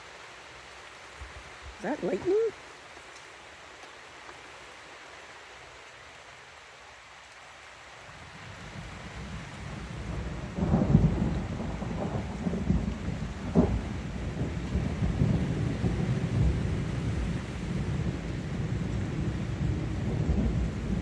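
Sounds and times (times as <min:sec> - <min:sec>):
steady rain: 0:00.0 - 0:21.0
thunder rumbling: 0:08.4 - 0:21.0.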